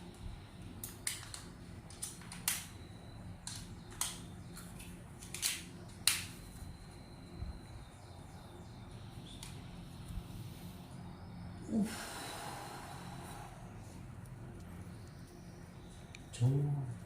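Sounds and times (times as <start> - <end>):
sharp clicks and snaps: 0.8 - 2.8, 3.4 - 6.4.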